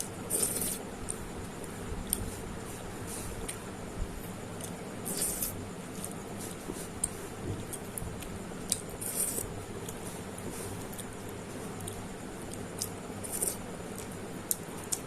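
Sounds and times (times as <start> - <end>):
chewing and mouth clicks: 7.0 - 10.0, 10.8 - 15.0.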